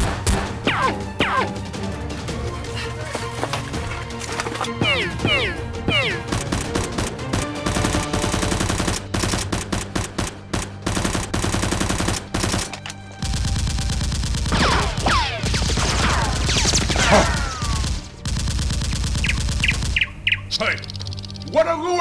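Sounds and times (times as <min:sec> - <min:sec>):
background music with low beat: 0:00.0 - 0:12.6
rapid gunfire: 0:04.9 - 0:20.2.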